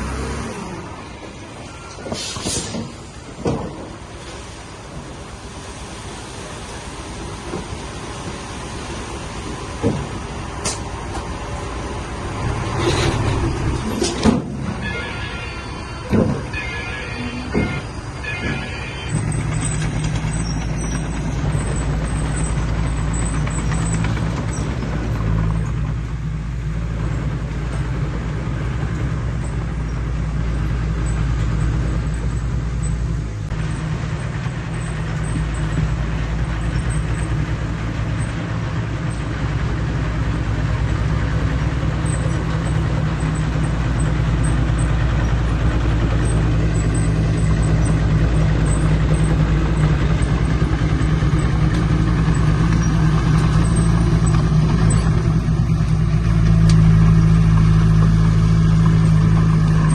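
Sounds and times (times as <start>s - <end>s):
diesel machine engine drone: 0.0s - 59.9s.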